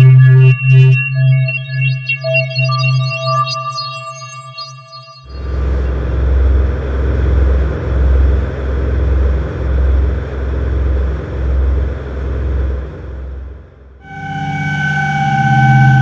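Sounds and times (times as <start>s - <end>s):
deep rumbling drone with hiss: 5.3s - 16.0s.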